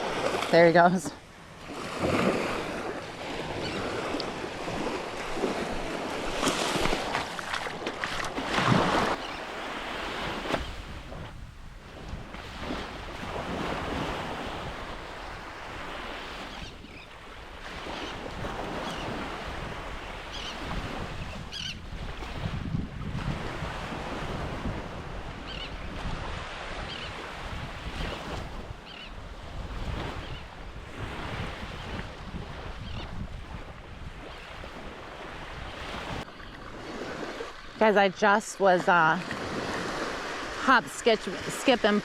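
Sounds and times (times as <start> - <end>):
wind buffeting microphone: 10.2 - 37.6.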